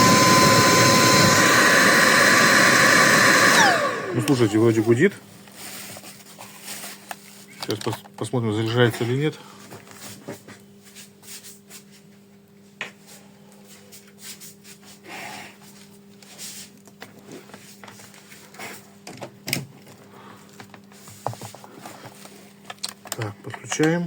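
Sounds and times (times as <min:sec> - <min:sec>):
clicks and knocks of handling: 0:07.0 - 0:08.4, 0:19.0 - 0:24.0.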